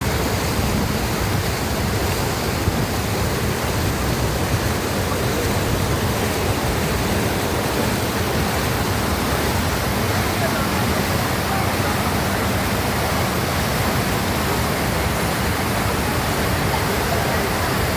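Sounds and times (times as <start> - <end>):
water rushing over weir: 0.0 - 17.9.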